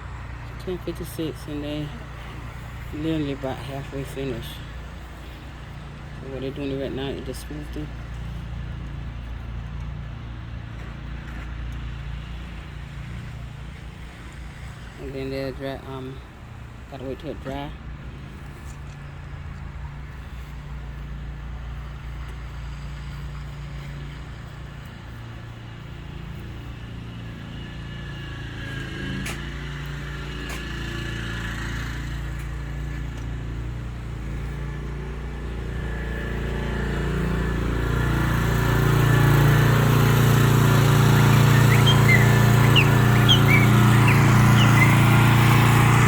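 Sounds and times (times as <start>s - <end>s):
engine running steadily: 0.0s - 46.0s.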